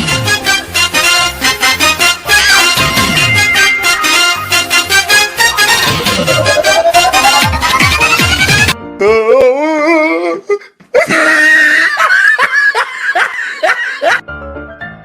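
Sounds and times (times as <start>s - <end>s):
warbling comedy laugh: 5.4s - 8.8s, 11.0s - 14.2s
repeated laughing pulses: 5.6s - 8.8s.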